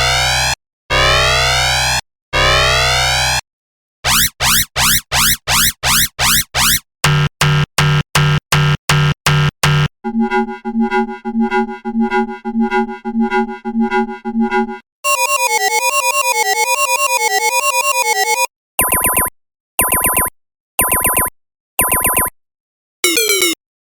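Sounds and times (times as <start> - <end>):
rapid pulsing beep: 4.1 - 6.8, 9.7 - 22.4, 23.0 - 23.6
rising sweep alarm: 4.1 - 6.8, 10.0 - 18.5
slow pulsed alarm tone: 10.0 - 18.4.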